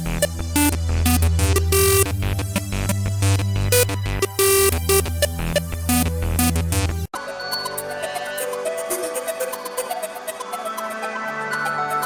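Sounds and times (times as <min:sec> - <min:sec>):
electronic organ melody: 0:00.0 - 0:07.1
fast beat of high ticks: 0:00.0 - 0:07.1.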